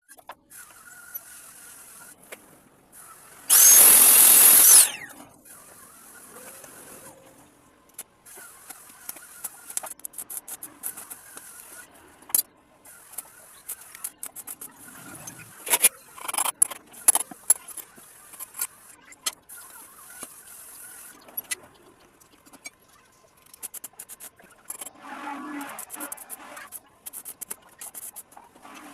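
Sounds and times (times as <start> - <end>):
power tool grinding metal: 3.5 - 5.1
metal clicks and scrapes: 7.9 - 22.8, 23.4 - 28.9.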